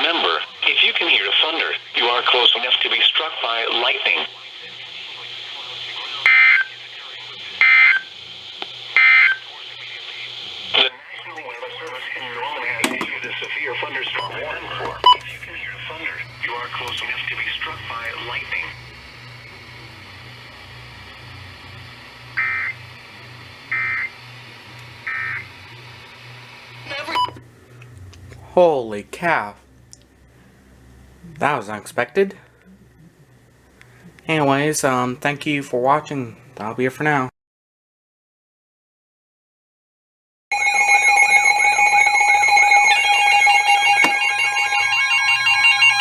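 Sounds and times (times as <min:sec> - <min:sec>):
radio hum and hiss: 0:00.0 - 0:37.3
buzzy digital squawks: 0:07.6 - 0:08.1, 0:09.0 - 0:09.4, 0:22.4 - 0:22.8, 0:25.0 - 0:25.5, 0:40.6 - 0:46.0
rising electronic chirp and tone: 0:40.5 - 0:46.0.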